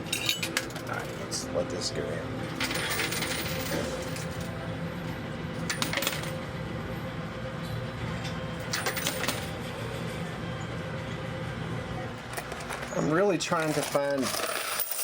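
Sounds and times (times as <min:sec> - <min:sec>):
coins clattering: 0:00.0 - 0:01.2, 0:02.6 - 0:04.6, 0:05.6 - 0:06.4, 0:08.6 - 0:09.5, 0:12.2 - 0:15.0
steady low hum: 0:00.0 - 0:13.4.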